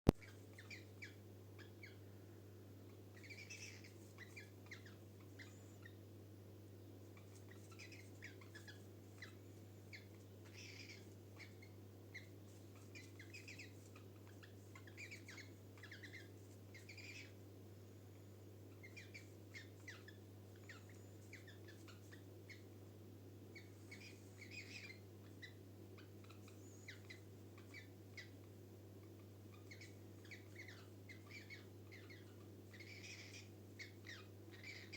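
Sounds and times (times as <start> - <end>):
cockatiels chirping: 0.2 - 2.0, 3.1 - 6.0, 7.1 - 17.4, 18.2 - 22.7, 23.5 - 34.9
steady low hum: 0.2 - 34.9.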